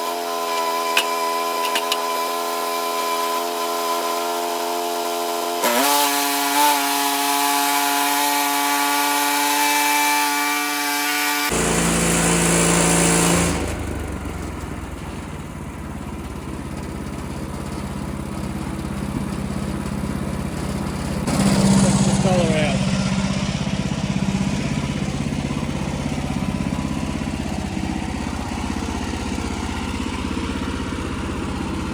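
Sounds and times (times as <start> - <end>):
saw blade rasping through wood: 0.0 - 13.5
sawmill engine running: 0.0 - 31.9.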